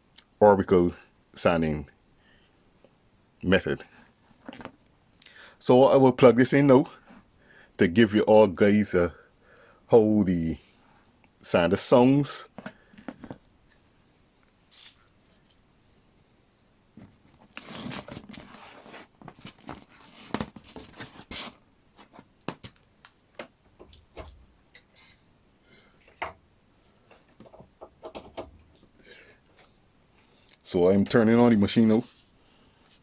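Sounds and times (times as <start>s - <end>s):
rustling: 12.6s - 15.7s, 16.9s - 25.2s
sharp clicks and knocks: 27.2s - 28.7s.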